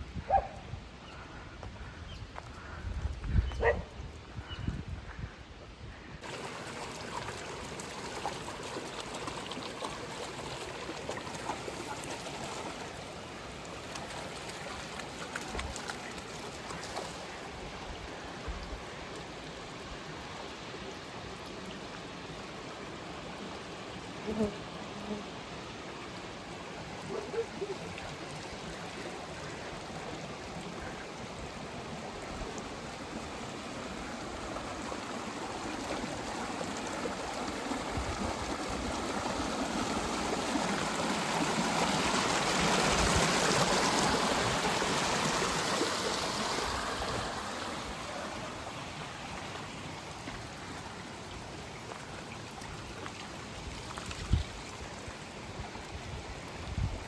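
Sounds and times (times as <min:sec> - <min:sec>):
stream water rushing: 0:06.2 - 0:57.0.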